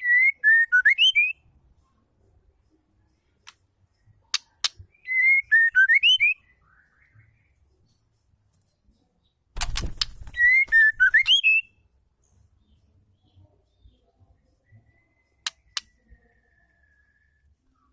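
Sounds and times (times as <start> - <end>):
bird rattle of clicks: 9.6 - 11.2
bird whistled phrase: 10.4 - 11.7.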